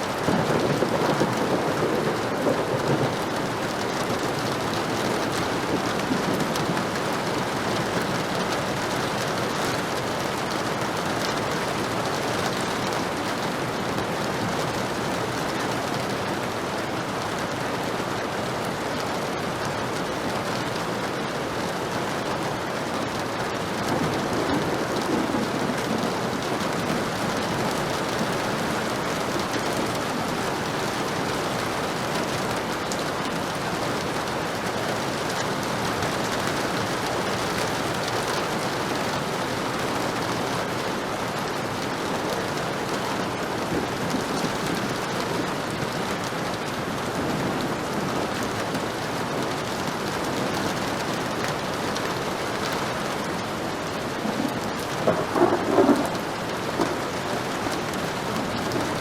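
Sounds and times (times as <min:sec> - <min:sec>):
heavy rain falling: 0:00.0 - 0:59.0
thunder rumbles: 0:00.1 - 0:09.3, 0:23.4 - 0:34.4, 0:53.9 - 0:59.0.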